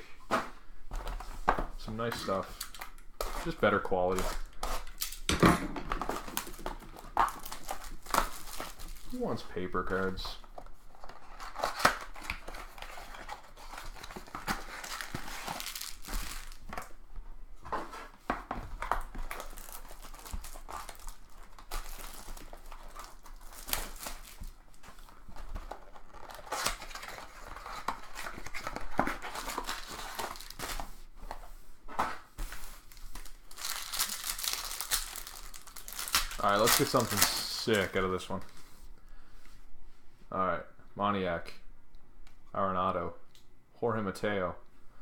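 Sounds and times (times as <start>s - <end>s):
card packaging crinkling and tearing: 1.8s - 17.0s, 17.6s - 30.9s, 32.4s - 38.6s.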